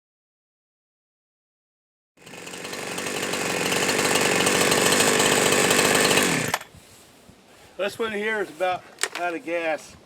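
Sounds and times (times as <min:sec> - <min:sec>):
chainsaw running at high revs: 0:02.2 - 0:06.7.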